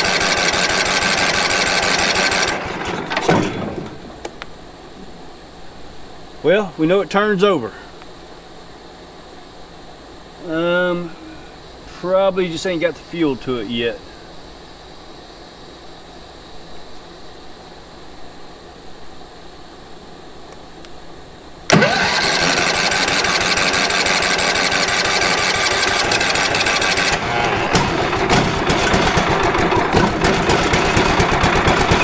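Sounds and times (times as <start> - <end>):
engine cranking and starting: 0.0 - 4.1, 21.7 - 32.0.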